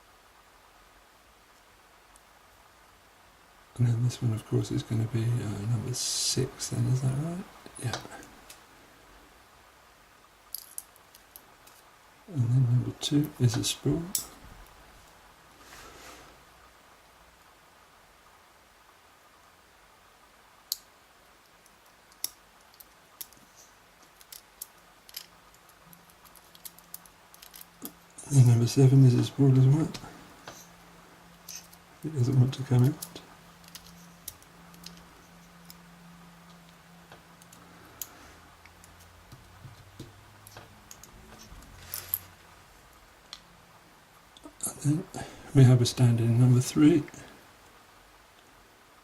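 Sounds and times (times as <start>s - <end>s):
tweezers clicking on lock pins: 32.8s - 35.8s, 40.4s - 41.2s.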